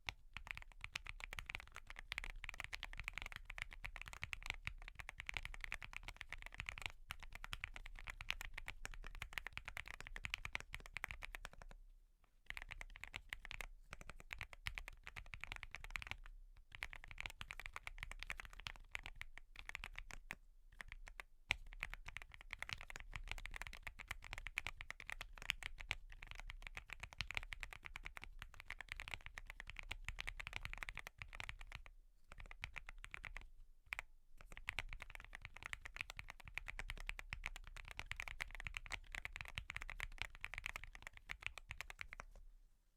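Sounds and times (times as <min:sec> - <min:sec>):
fast typing on mechanical keyboard: 0:00.4 - 0:11.7, 0:12.5 - 0:42.4.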